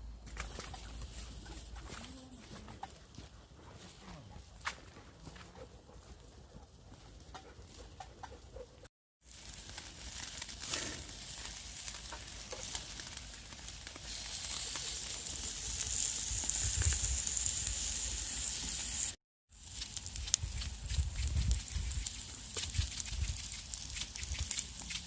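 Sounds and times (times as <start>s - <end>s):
food sizzling on hot pan: 9.2s - 24.8s.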